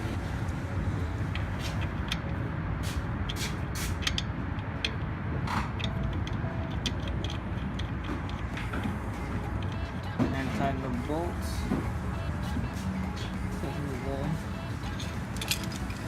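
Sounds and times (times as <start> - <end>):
hand tools clinking on bolts: 14.9 - 16.0.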